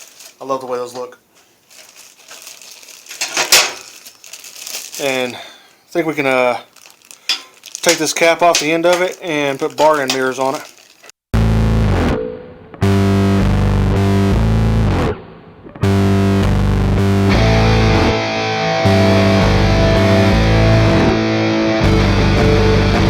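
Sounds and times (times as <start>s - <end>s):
rock music with distorted guitar: 11.4s - 23.0s.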